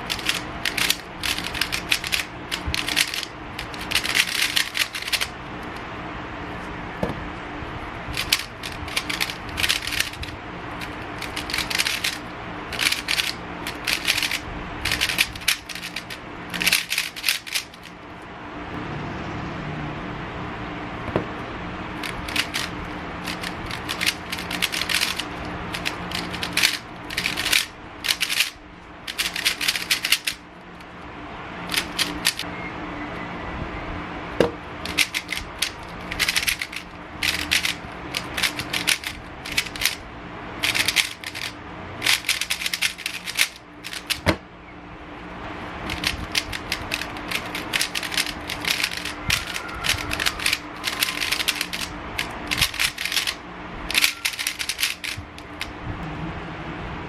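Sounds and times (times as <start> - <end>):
speed cube clicking: 0.0 - 5.8, 8.1 - 17.9, 22.0 - 30.4, 31.7 - 32.5, 34.8 - 40.0, 40.6 - 44.4, 45.8 - 55.7
low hum: 0.0 - 57.0.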